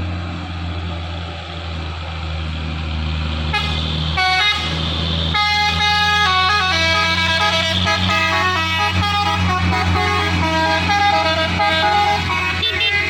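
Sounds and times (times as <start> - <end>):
truck engine running: 0.0 - 13.0
multi-tone air horn tune: 3.5 - 13.0.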